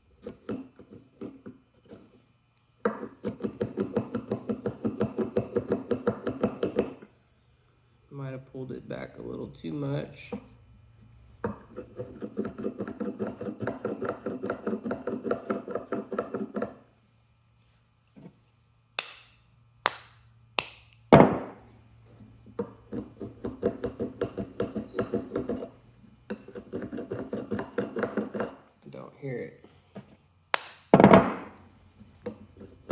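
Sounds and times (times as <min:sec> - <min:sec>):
mallet knocking on hand plane: 0:02.9 - 0:07.0, 0:21.2 - 0:21.6, 0:22.6 - 0:25.7, 0:26.3 - 0:28.6, 0:30.6 - 0:31.6.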